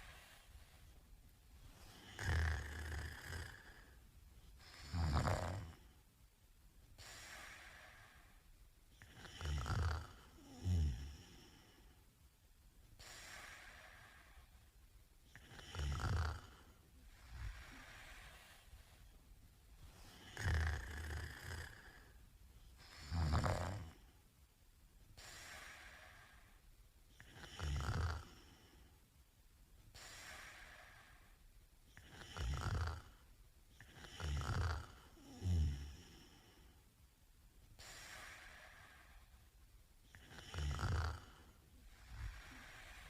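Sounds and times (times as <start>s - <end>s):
soft breaths: 0.0s - 43.0s
man snoring: 1.9s - 4.0s, 4.7s - 5.9s, 9.0s - 11.8s, 15.3s - 16.7s, 20.1s - 22.1s, 22.9s - 24.0s, 27.2s - 28.8s, 32.0s - 33.2s, 33.8s - 36.6s, 40.1s - 43.0s.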